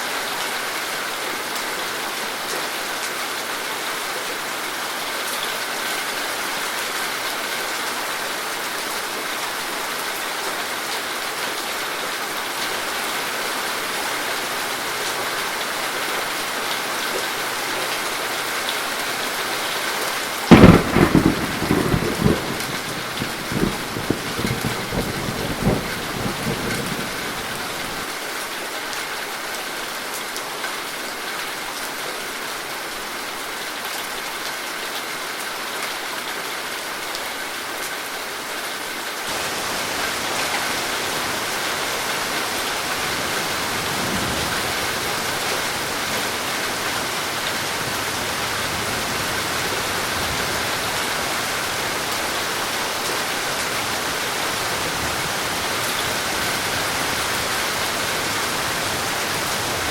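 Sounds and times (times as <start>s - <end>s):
steady rain falling: 0.0s - 59.9s
thunderclap rolling and crackling: 20.5s - 28.1s.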